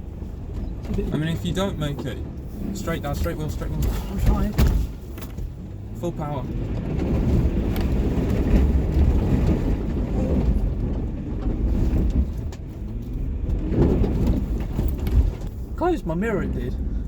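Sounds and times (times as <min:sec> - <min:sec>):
car engine under heavy throttle: 0:00.0 - 0:17.0
vehicle body knocks and bumps: 0:03.0 - 0:05.8, 0:06.6 - 0:15.8.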